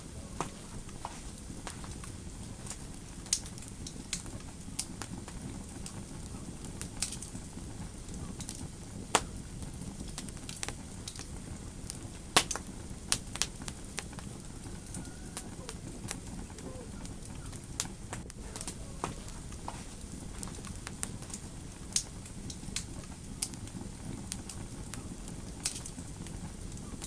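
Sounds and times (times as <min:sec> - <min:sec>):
fire crackling and popping: 0:00.0 - 0:27.0
low fire rumble: 0:00.0 - 0:27.0.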